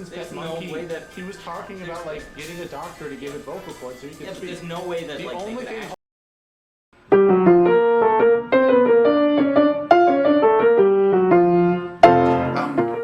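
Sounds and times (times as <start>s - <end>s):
piano melody of quick notes: 7.1s - 13.0s.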